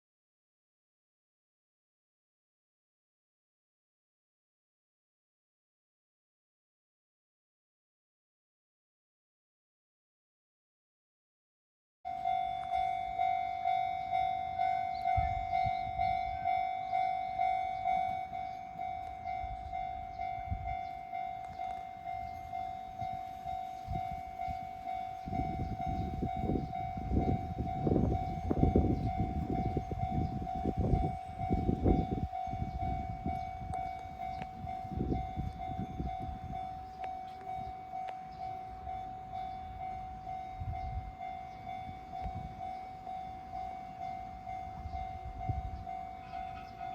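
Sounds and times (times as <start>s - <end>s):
level crossing bell ringing: 12.1s - 46.9s
train rumbling over crossing: 12.1s - 46.9s.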